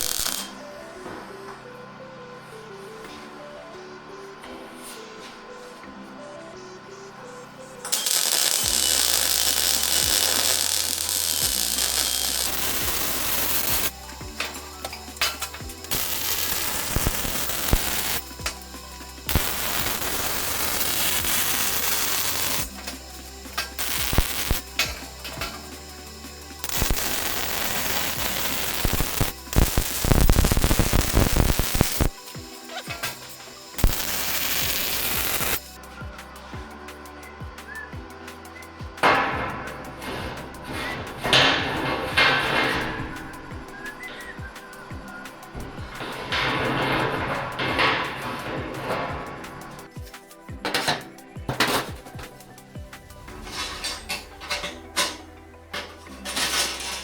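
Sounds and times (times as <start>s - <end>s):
metalworking tool on metal: 0.0s - 0.6s, 7.9s - 35.8s
arc welding crackling: 0.0s - 0.8s, 7.8s - 57.0s
background music: 0.0s - 57.0s.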